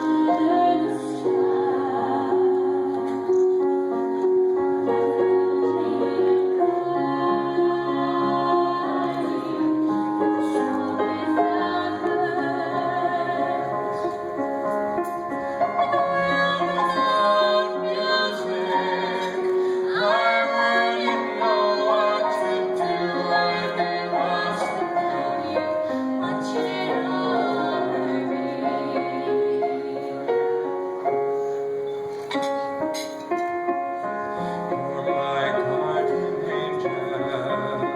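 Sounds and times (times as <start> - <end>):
woman singing: 0.0 - 3.2, 15.8 - 29.3
keyboard accompaniment: 0.0 - 37.9.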